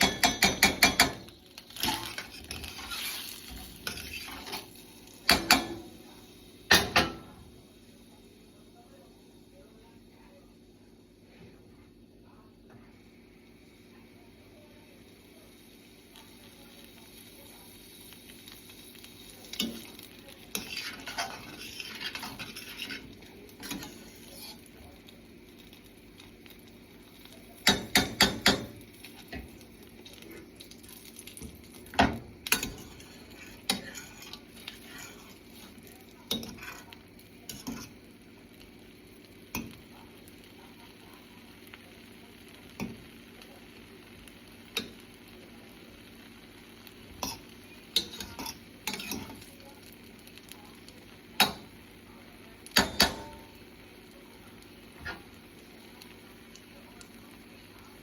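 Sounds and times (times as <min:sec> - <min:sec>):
utensil stirring food in a pan: 0:00.0 - 0:08.6, 0:12.7 - 0:58.0
faint sizzle: 0:00.0 - 0:58.0.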